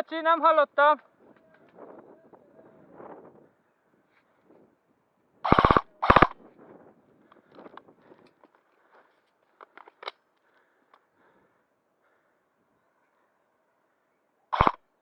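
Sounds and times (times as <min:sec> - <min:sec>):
airsoft gun rapid burst: 0:05.5 - 0:06.4, 0:14.6 - 0:14.8.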